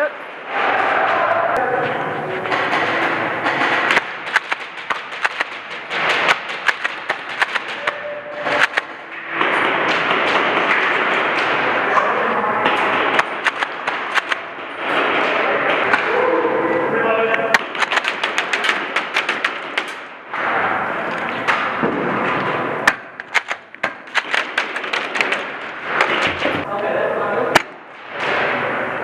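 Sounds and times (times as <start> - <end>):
noisy clatter: 0.0 - 29.0
airsoft gun shots snapping: 3.7 - 9.0, 13.1 - 14.5, 22.9 - 26.2.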